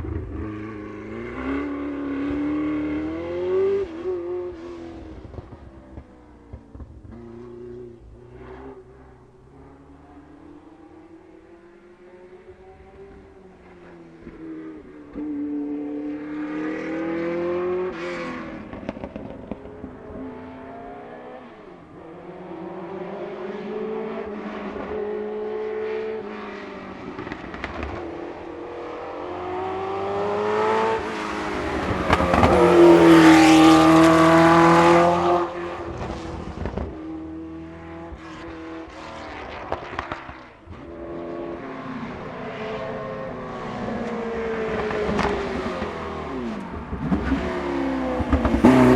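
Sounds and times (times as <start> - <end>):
racing car engine accelerating: 20.3 - 40.0.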